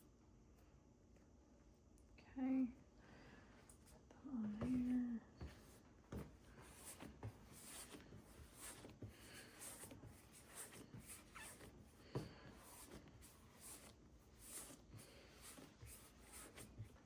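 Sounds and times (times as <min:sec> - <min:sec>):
hands rolling dough on counter: 0:04.5 - 0:17.0.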